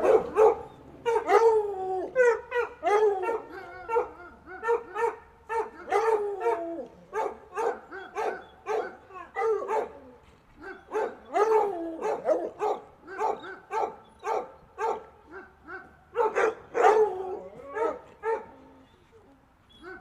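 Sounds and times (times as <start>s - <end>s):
dog yelping: 0.0s - 5.6s
dogs barking: 0.0s - 10.0s, 10.6s - 18.5s.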